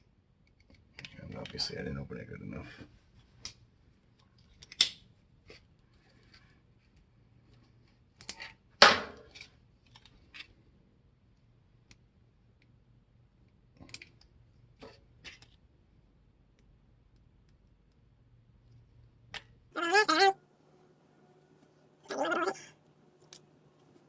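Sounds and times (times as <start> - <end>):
loud knock: 8.8 - 9.3.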